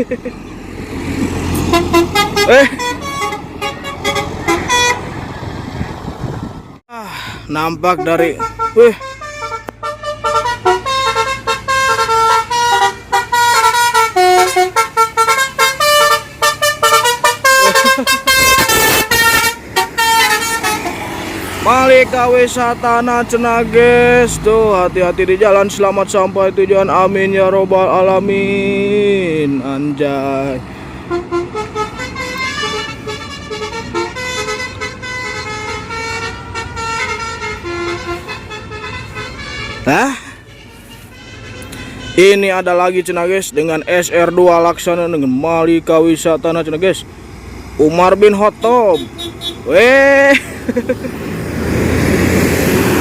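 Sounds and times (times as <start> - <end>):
road traffic noise: 0.0 - 53.0
bus musical horn tune: 1.5 - 5.2, 7.8 - 21.2, 30.7 - 42.4, 48.9 - 49.7.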